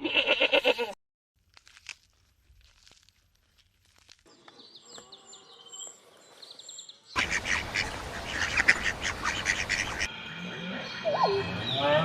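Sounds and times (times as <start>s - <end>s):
ducks quacking: 7.2s - 12.0s
faint bird chirps: 9.0s - 12.0s.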